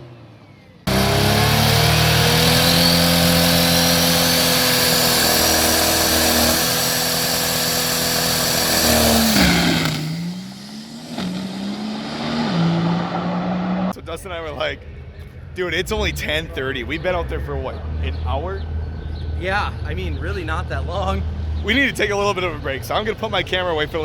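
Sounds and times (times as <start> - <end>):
vehicle engine revving: 0.0 - 14.0.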